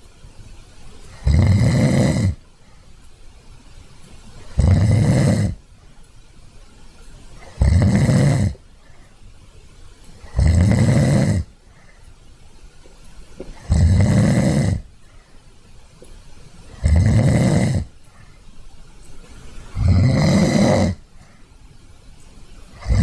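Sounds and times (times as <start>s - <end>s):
quiet breathing: 0.0s - 23.0s
person snoring: 1.1s - 2.4s, 4.5s - 5.6s, 7.4s - 8.6s, 10.2s - 11.5s, 13.6s - 14.9s, 16.7s - 18.0s, 19.7s - 21.0s, 22.8s - 23.0s.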